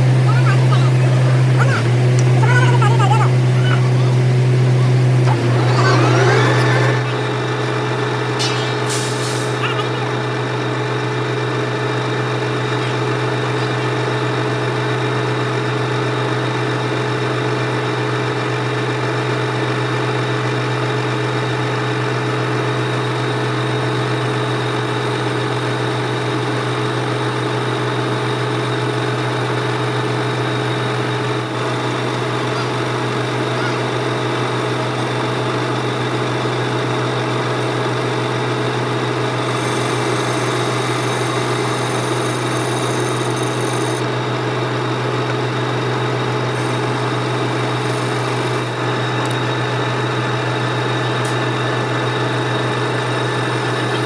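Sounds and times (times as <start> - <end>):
machinery humming: 0.0 - 17.3, 29.8 - 54.0.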